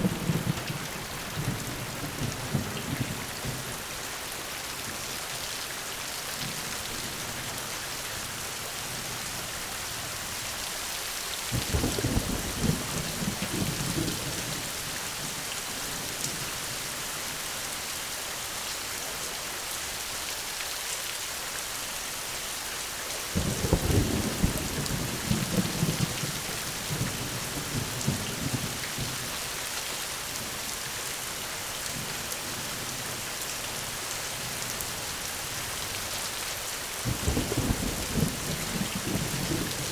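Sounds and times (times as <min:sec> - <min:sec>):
steady rain falling: 0:00.0 - 0:39.9
thunder rumbling: 0:37.1 - 0:39.9.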